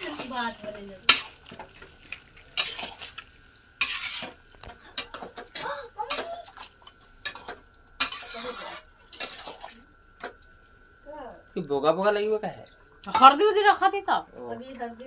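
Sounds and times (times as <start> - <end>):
ladle scraping metal pot: 3.8 - 5.3, 7.2 - 9.8.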